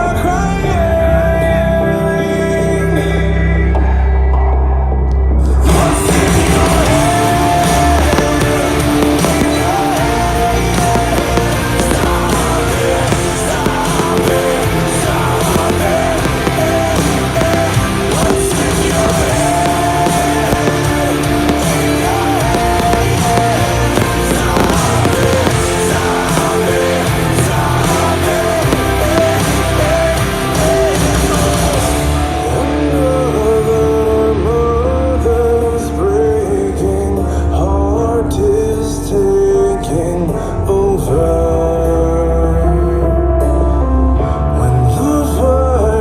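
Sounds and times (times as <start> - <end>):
person singing: 0.0 - 4.6, 5.2 - 46.0
instrumental backing music: 0.0 - 46.0.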